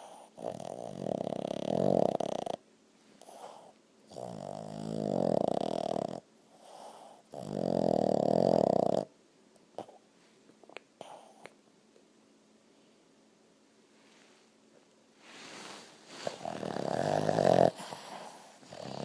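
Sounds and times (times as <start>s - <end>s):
soft breaths: 0.0s - 0.4s, 3.0s - 3.8s, 6.4s - 7.3s, 13.8s - 19.0s
dog snoring: 0.0s - 2.6s, 3.2s - 9.1s, 9.8s - 10.0s, 15.4s - 19.0s.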